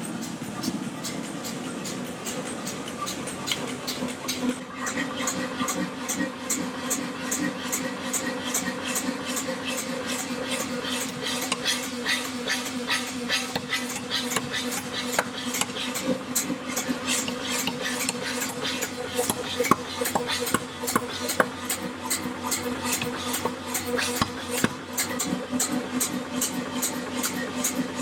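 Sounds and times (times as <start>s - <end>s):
motor and compressor hum: 0.0s - 28.0s
power hammer ram striking: 18.8s - 25.3s.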